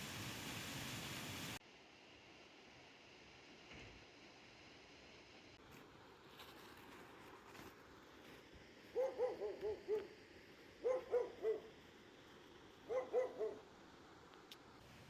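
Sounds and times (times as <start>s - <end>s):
dog barking: 8.9s - 10.1s, 10.8s - 11.7s, 12.9s - 13.6s.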